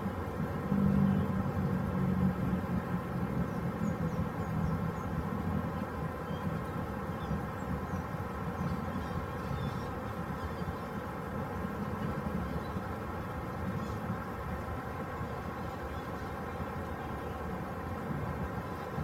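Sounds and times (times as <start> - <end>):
engine drone: 0.0 - 19.0.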